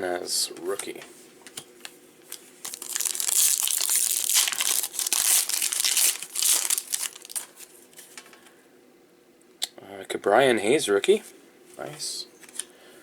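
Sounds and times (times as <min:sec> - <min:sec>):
foil wrapper tearing and crinkling: 0:02.3 - 0:07.7.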